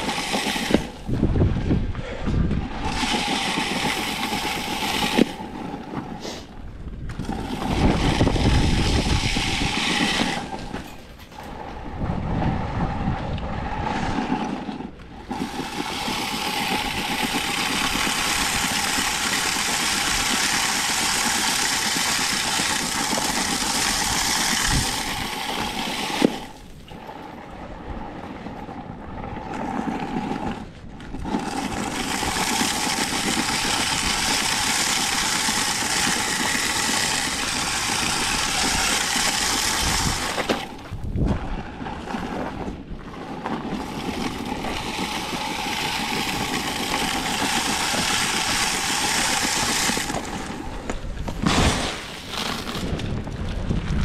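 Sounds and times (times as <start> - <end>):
wind buffeting microphone: 0.3 - 5.8, 6.5 - 21.2, 22.7 - 25.7, 26.4 - 51.7, 52.6 - 54.0
hiss: 6.2 - 6.5.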